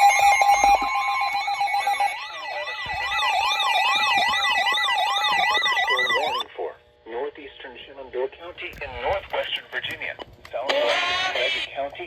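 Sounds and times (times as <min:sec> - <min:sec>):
higher electronic tone: 0:00.0 - 0:06.4
steady electronic alert tone: 0:00.0 - 0:06.4
electronic siren sweeping: 0:00.0 - 0:06.5.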